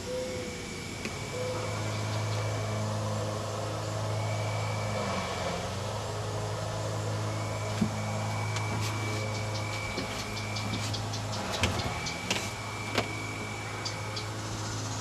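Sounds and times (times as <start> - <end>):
low engine hum: 0.0 - 15.0.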